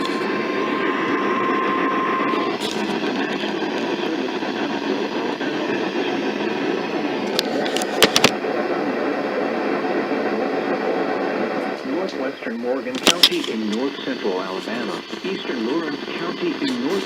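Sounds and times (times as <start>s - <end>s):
steady warning alert tone: 0.0s - 6.0s
radio static hiss: 0.0s - 17.0s
sharp clicks: 13.0s - 13.8s.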